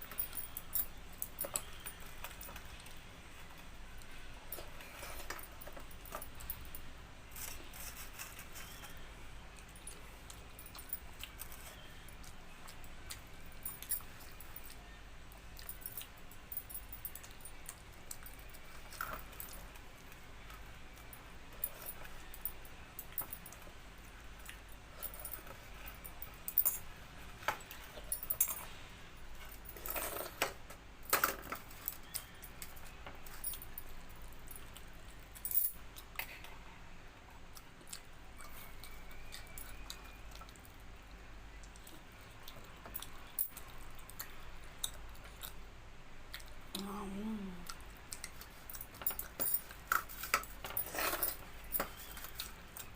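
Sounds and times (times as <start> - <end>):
chewing: 37.5 - 40.8.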